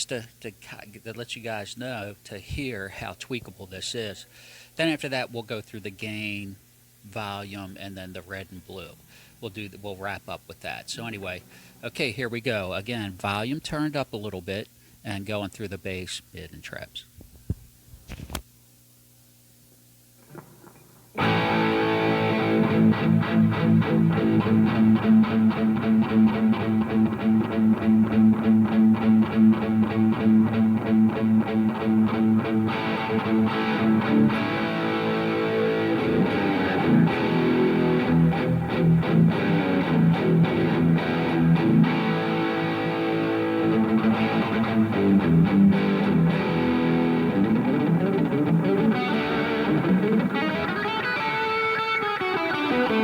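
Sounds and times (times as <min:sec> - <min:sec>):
distorted electric guitar: 0:20.3 - 0:53.0.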